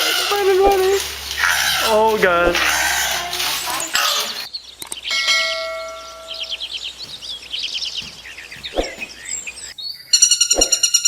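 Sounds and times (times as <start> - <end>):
small birds chirping: 0.0 - 11.0
bell-like tone ringing: 5.1 - 6.6.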